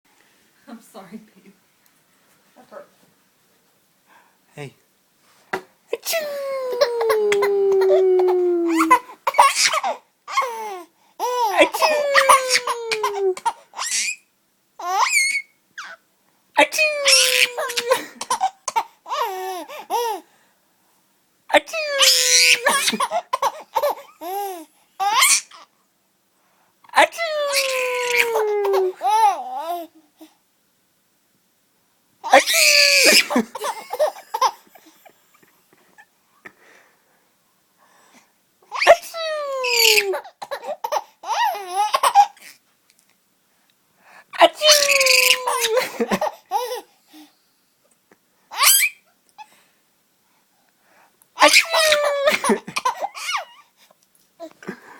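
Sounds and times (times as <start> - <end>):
soft breaths: 1.8 - 5.6, 34.6 - 38.5, 43.5 - 44.4, 46.3 - 48.5, 49.4 - 51.3, 53.0 - 54.9
baby laughing and squealing: 6.0 - 14.2, 14.8 - 16.0, 16.7 - 20.2, 21.6 - 25.6, 27.1 - 29.8, 32.2 - 34.6, 38.7 - 42.5, 44.4 - 46.8, 48.5 - 49.0, 51.4 - 53.6.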